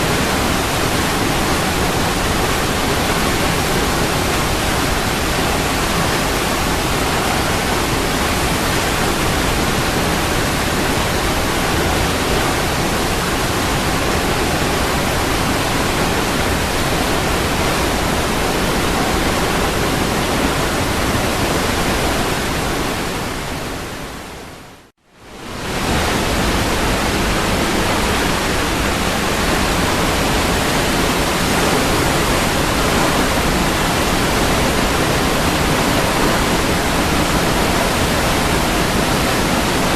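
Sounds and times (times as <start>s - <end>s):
waterfall roaring: 0.0s - 39.9s.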